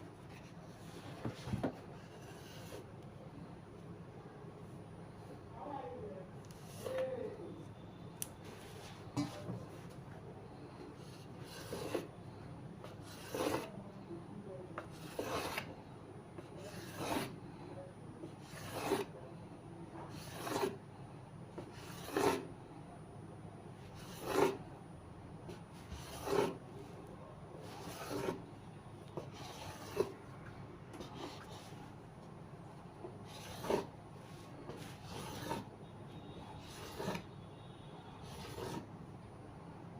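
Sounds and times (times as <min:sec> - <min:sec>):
rolling pin rubbing on dough: 0:10.9 - 0:12.1, 0:12.8 - 0:13.8, 0:14.8 - 0:15.7, 0:16.4 - 0:17.4, 0:18.2 - 0:19.2, 0:20.1 - 0:20.8, 0:21.6 - 0:22.5, 0:23.8 - 0:24.6, 0:25.5 - 0:26.6, 0:27.6 - 0:28.5, 0:29.2 - 0:30.2, 0:33.1 - 0:35.8, 0:36.6 - 0:37.3, 0:38.2 - 0:38.9.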